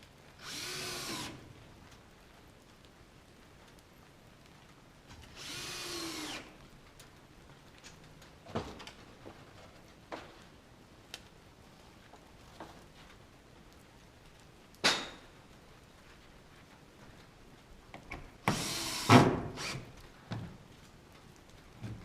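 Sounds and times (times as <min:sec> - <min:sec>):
power drill running: 0:00.4 - 0:01.4, 0:05.3 - 0:06.5, 0:18.5 - 0:19.9.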